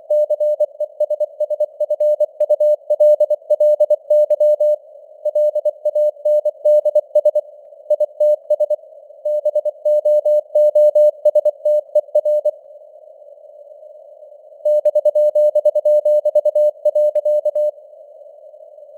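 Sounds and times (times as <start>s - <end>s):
morse code beeping tone: 14.7s - 17.7s.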